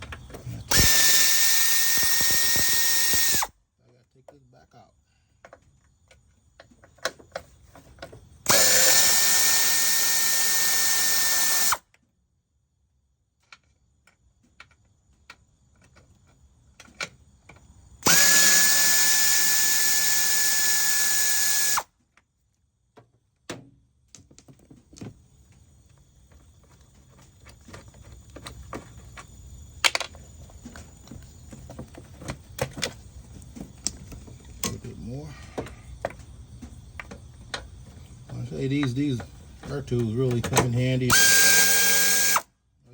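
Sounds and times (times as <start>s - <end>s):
power ratchet whining: 0.6s - 3.5s, 8.4s - 11.8s, 18.0s - 21.9s, 40.7s - 42.5s.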